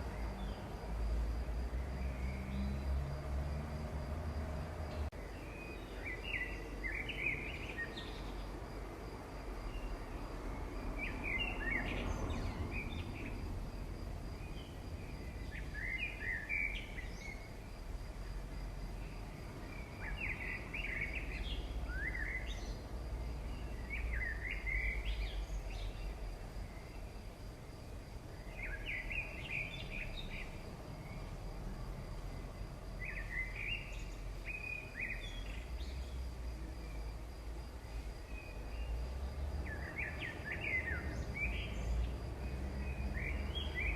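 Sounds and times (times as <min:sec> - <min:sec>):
small birds chirping: 0:14.2 - 0:17.6, 0:19.0 - 0:27.2, 0:32.8 - 0:36.2.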